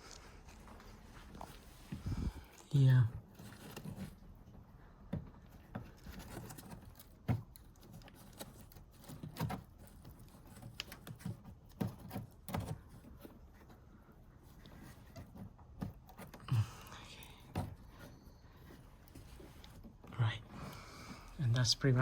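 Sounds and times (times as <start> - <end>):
plastic parts clicking and knocking: 3.4 - 13.7.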